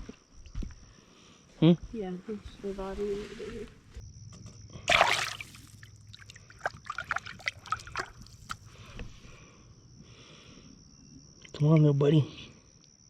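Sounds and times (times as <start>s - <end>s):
river water splashing and trickling: 4.9s - 8.8s.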